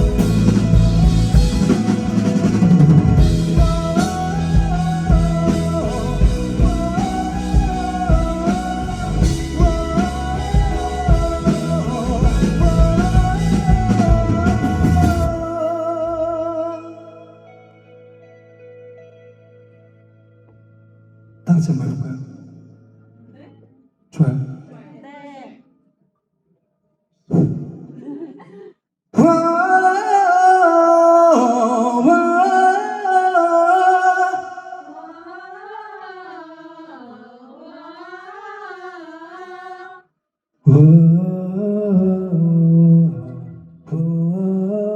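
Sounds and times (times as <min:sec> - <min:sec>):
drum kit: 0:00.0 - 0:15.8
bass guitar: 0:00.0 - 0:16.8
guitar: 0:00.0 - 0:23.9, 0:40.7 - 0:44.9
person singing long held notes: 0:02.3 - 0:17.6.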